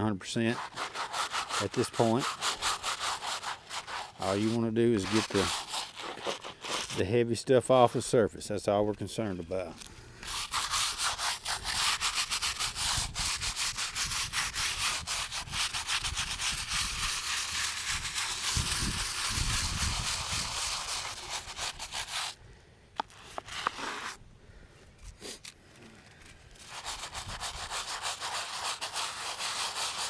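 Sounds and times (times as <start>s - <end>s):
bristle brush scrubbing stone: 0.0s - 8.1s, 9.7s - 22.4s, 23.0s - 24.2s, 26.2s - 30.0s
brief scrape: 0.5s - 7.0s, 23.0s - 24.2s, 25.0s - 29.6s.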